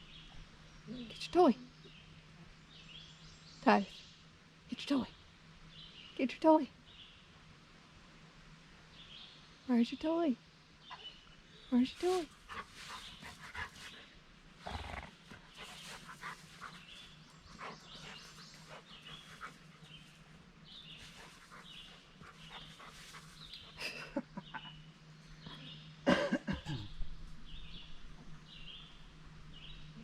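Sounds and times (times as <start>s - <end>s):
rustles: 11.0s - 25.7s.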